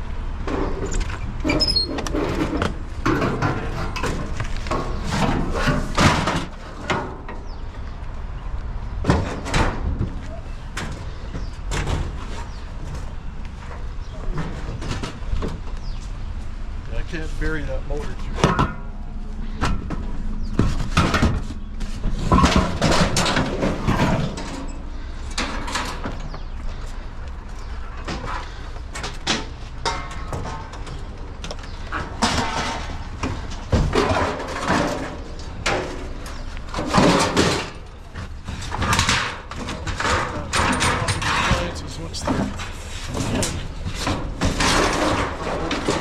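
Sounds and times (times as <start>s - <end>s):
scrap metal knocking and rattling: 0.4s - 7.6s, 18.1s - 26.8s, 27.6s - 46.0s.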